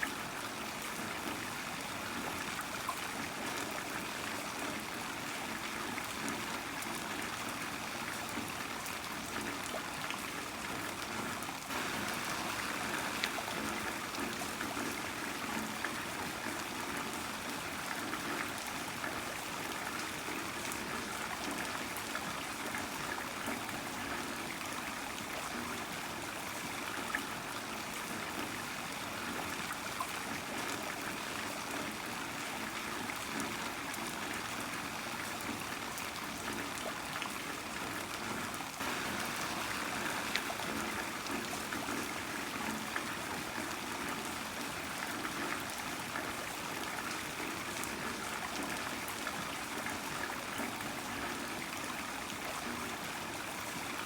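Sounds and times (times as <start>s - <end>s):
water trickling: 11.0s - 19.9s, 38.8s - 51.7s
heavy rain falling: 11.7s - 15.4s, 38.8s - 42.3s.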